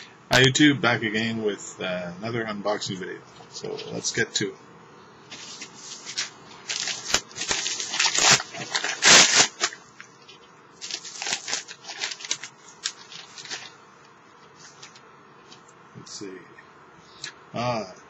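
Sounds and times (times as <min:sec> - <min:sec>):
packaging crinkling and rustling: 0:05.3 - 0:13.8.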